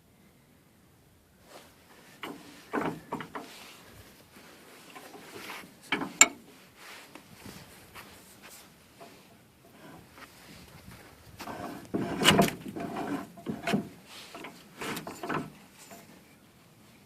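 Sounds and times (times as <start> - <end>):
bench vise knocking and clanking: 2.2 - 3.5, 5.9 - 6.4, 11.6 - 15.6.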